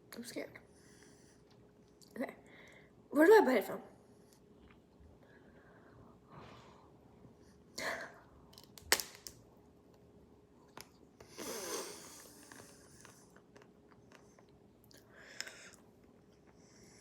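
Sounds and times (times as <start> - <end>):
soft chewing: 1.3 - 2.2, 4.2 - 6.0, 10.0 - 17.0.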